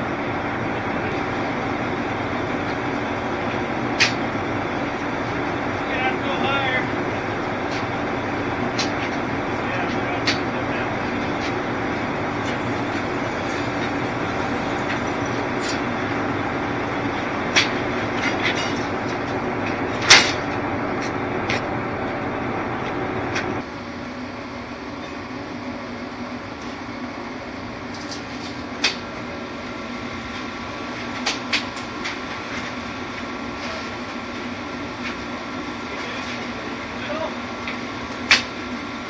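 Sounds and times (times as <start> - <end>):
steady machine hum: 0.0 - 23.7.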